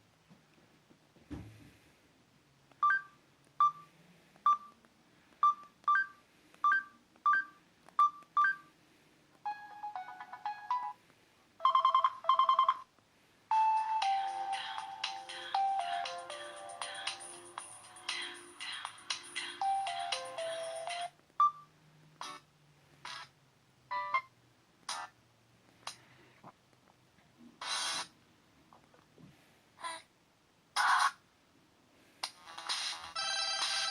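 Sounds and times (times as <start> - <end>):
phone ringtone snippets: 9.5 - 11.0, 11.6 - 12.9
short phone beeps: 11.6 - 12.9.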